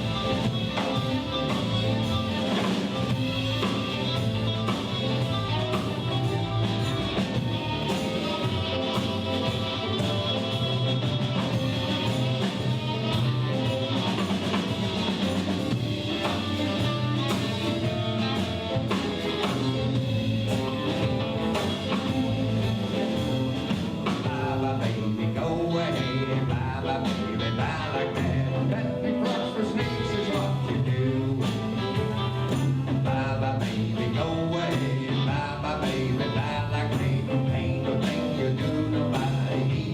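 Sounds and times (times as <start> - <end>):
blues band playing: 0.0 - 39.9.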